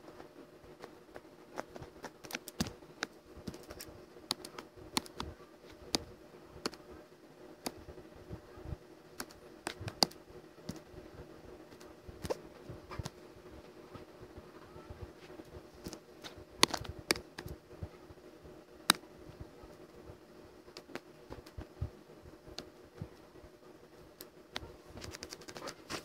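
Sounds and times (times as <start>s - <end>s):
steady low hum: 0.0s - 26.0s
computer clicks and taps: 0.8s - 5.3s, 5.9s - 6.8s, 9.2s - 10.9s, 15.8s - 17.6s.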